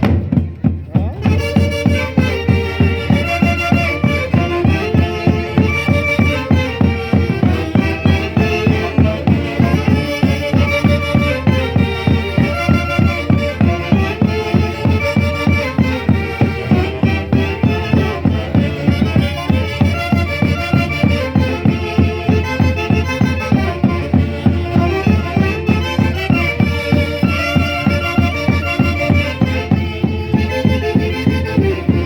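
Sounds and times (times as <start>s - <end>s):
folk dance band music: 0.0s - 32.0s.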